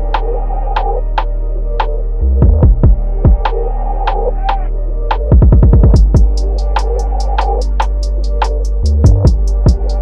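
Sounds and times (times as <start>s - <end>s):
electronic music: 0.0s - 10.0s
falling bass kicks: 1.8s - 3.6s, 5.1s - 6.5s, 8.9s - 10.0s.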